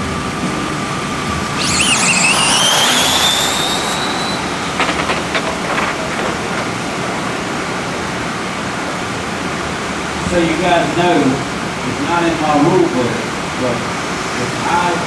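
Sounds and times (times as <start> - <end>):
rc car motors whining: 1.2 - 7.2
sharp clicks: 1.6 - 6.9.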